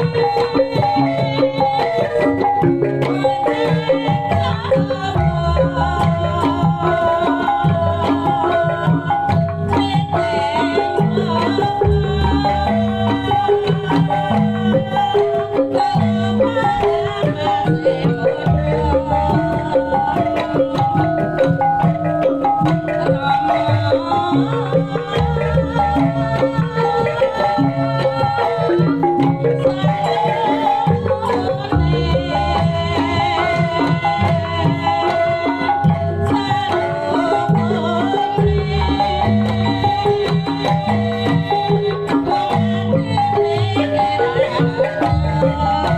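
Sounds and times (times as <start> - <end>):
hand drums: 0.0 - 45.9.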